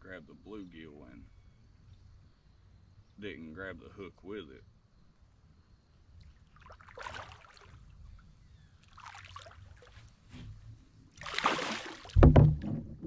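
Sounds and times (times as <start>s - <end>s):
water splashing against kayak: 6.5s - 8.2s, 8.8s - 13.0s
heavy low thump: 12.2s - 13.0s.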